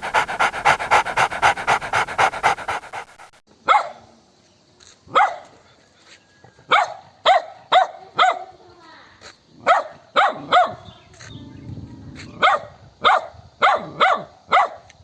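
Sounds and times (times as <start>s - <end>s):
dog panting: 0.0s - 3.4s
dog barking: 3.6s - 4.1s, 5.1s - 5.6s, 6.7s - 8.6s, 9.6s - 10.9s, 12.4s - 14.9s.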